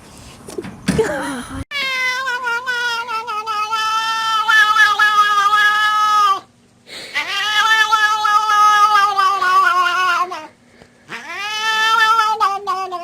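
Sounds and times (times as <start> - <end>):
cat yowling: 1.7 - 6.5, 7.1 - 10.5, 11.1 - 13.0.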